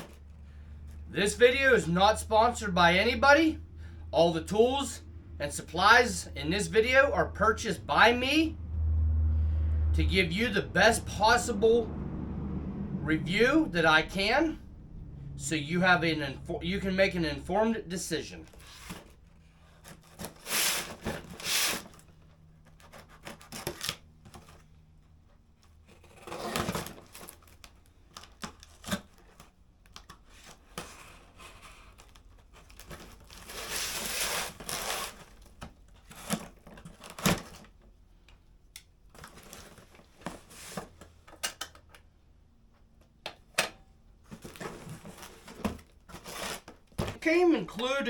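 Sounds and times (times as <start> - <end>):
packaging rustling and scraping: 30.2 - 37.8, 39.1 - 41.2, 44.3 - 47.2
tape tearing: 32.0 - 35.5, 46.1 - 47.0.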